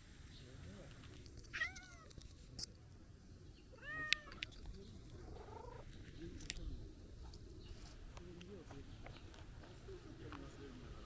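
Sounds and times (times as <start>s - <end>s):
cat meowing: 1.5s - 2.1s, 3.8s - 4.4s.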